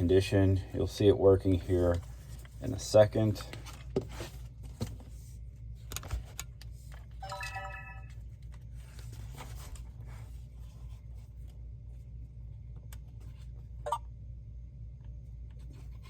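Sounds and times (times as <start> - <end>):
steady low hum: 0.0 - 16.0
rising electronic chime: 7.2 - 8.1.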